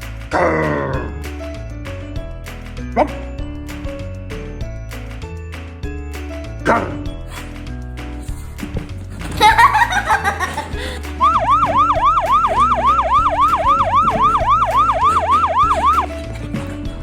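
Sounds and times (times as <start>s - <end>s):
background music with bass line: 0.0s - 17.0s
siren yelping: 11.2s - 16.1s.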